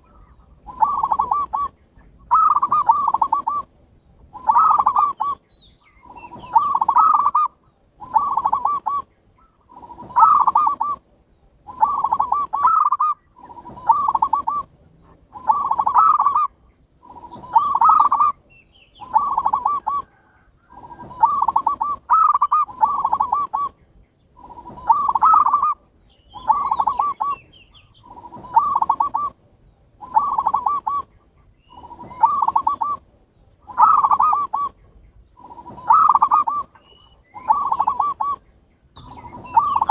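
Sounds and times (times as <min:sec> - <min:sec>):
dove cooing: 0:00.0 - 0:11.0, 0:11.6 - 0:23.8, 0:24.4 - 0:29.4, 0:30.0 - 0:39.9.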